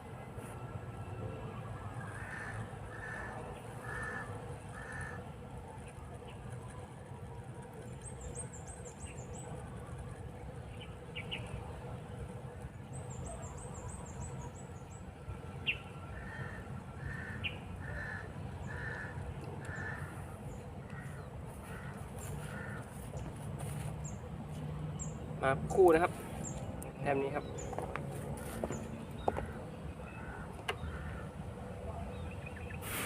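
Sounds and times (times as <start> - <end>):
low outdoor rumble: 0.0 - 33.0
bird cawing: 2.1 - 5.3, 16.1 - 23.1, 29.2 - 31.5.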